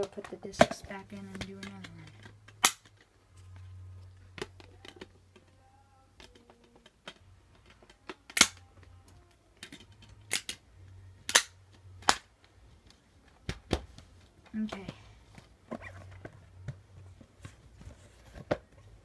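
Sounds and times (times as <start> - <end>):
faint low hum: 0.0 - 19.0
plastic disc cases snapping: 1.3 - 3.1, 6.2 - 8.6, 9.6 - 10.6, 11.2 - 12.3.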